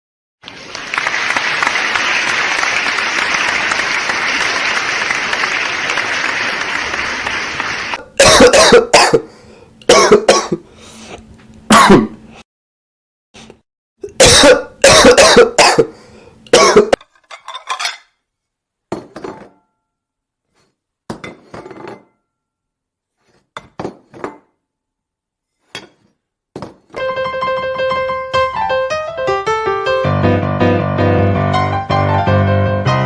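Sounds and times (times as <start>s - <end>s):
person coughing: 8.1s - 9.3s, 9.9s - 10.7s, 11.7s - 12.3s, 14.0s - 17.0s
keyboard melody: 27.0s - 33.0s.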